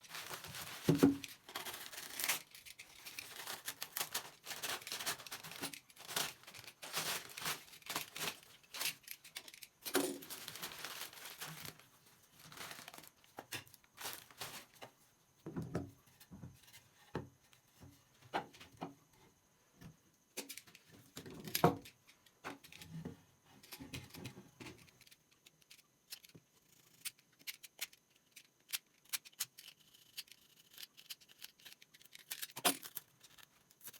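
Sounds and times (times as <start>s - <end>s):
tearing and crinkling: 0.0s - 14.8s, 27.4s - 33.9s.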